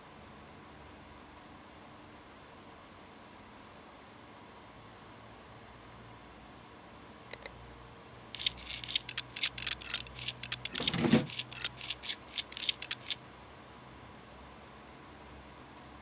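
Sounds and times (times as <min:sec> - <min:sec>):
clicks and rustles of handling: 0:08.4 - 0:13.2.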